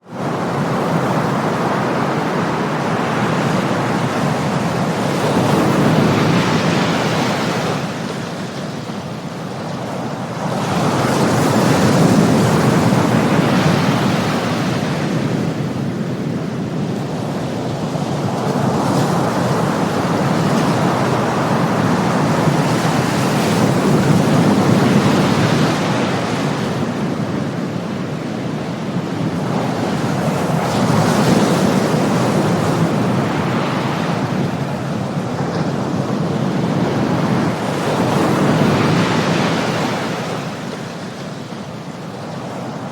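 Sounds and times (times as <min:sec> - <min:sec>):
ocean waves rushing: 0:17.1 - 0:42.9.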